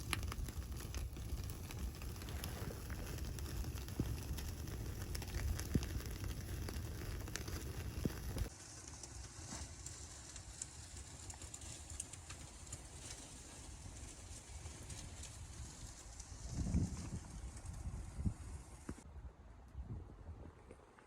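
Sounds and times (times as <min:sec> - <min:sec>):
steady hiss: 0:00.0 - 0:19.0
wood fire crackling: 0:00.0 - 0:19.0.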